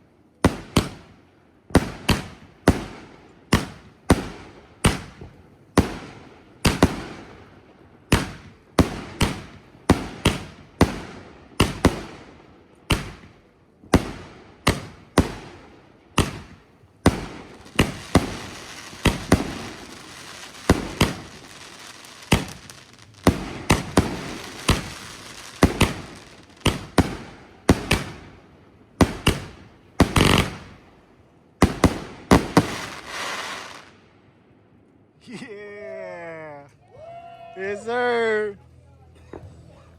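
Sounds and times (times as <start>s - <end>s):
steady hiss: 2.2s - 34.7s
firework bangs with echo: 8.1s - 12.3s, 13.9s - 15.6s, 16.2s - 28.4s, 29.0s - 30.8s, 31.6s - 33.9s.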